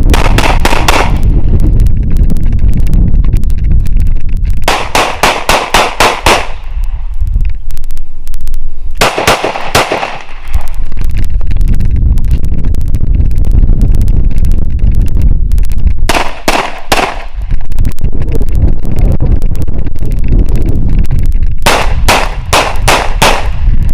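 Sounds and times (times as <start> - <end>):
loud low rumble: 0.0 - 5.2, 6.5 - 23.9
semi-automatic gunfire: 0.1 - 1.3, 4.7 - 6.7, 9.0 - 10.6, 16.1 - 17.4, 21.6 - 23.6.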